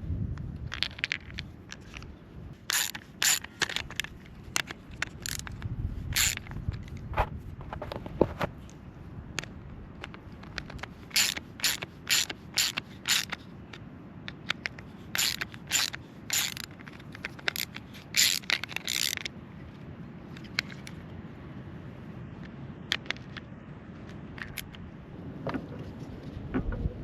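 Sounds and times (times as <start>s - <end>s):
ratchet wrench ratcheting: 2.6s - 6.9s, 10.4s - 13.4s, 14.5s - 19.3s.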